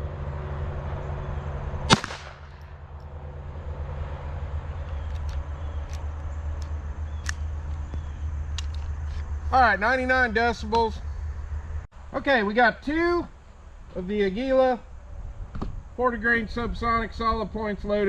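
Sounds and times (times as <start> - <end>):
pistol shot: 1.9 - 2.8.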